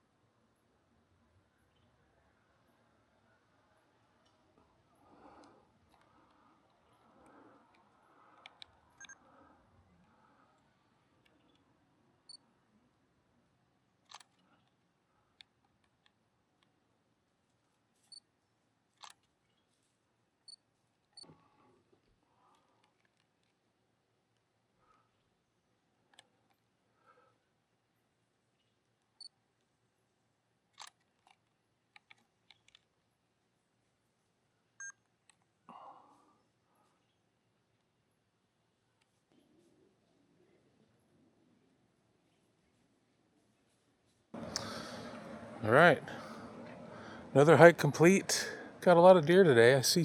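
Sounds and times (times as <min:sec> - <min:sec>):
faint clicks: 0:04.2 - 0:12.4, 0:14.0 - 0:16.8, 0:30.7 - 0:33.0, 0:43.6 - 0:45.5
faint high chirps and ticks: 0:17.6 - 0:23.6, 0:28.4 - 0:29.7.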